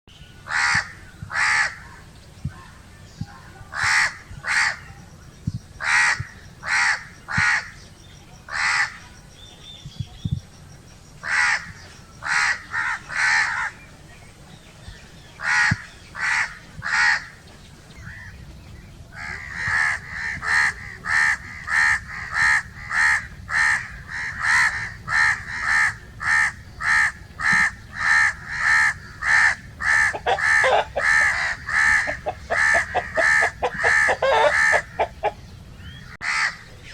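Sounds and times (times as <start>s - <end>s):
crows cawing: 0.5s - 1.8s, 3.7s - 4.8s, 5.8s - 7.7s, 11.2s - 13.8s, 15.4s - 17.4s, 19.2s - 35.4s, 36.2s - 36.7s.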